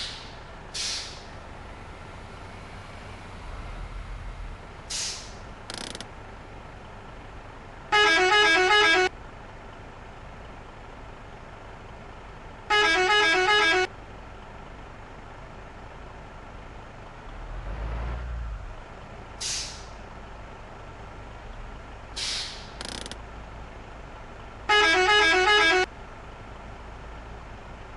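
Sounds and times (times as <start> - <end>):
air hissing: 0.0 - 1.3, 4.9 - 5.4, 19.4 - 20.0, 22.2 - 22.9
low engine rumble: 0.0 - 27.9
bus musical horn warbling: 7.9 - 9.1, 12.7 - 13.9, 24.6 - 25.9.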